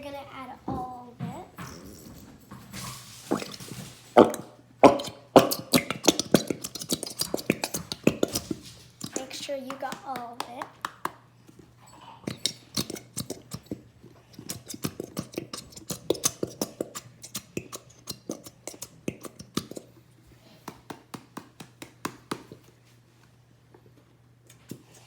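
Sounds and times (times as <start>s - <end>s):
glue bottle squeezed and tapped: 4.2s - 10.2s, 12.3s - 19.9s.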